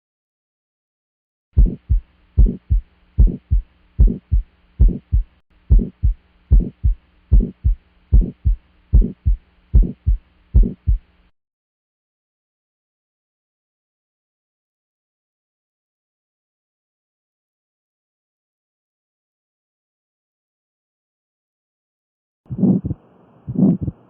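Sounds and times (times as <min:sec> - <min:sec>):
heartbeat through stethoscope: 0:01.6 - 0:11.0, 0:22.5 - 0:24.0
faint steady hum: 0:01.6 - 0:11.3, 0:22.5 - 0:24.0.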